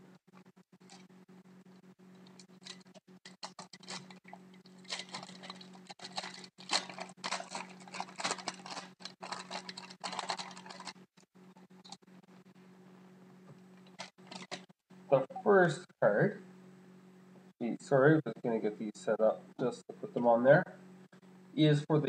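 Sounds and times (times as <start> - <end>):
packaging crinkling: 2.2 - 11.1, 13.8 - 14.7.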